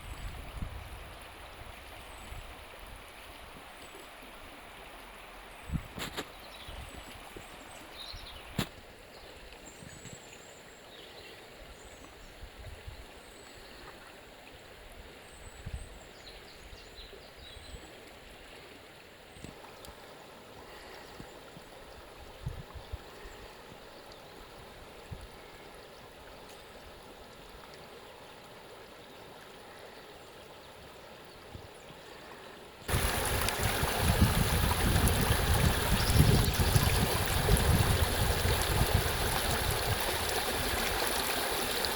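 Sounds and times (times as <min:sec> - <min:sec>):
stream water flowing: 0:00.0 - 0:15.4, 0:17.1 - 0:41.9.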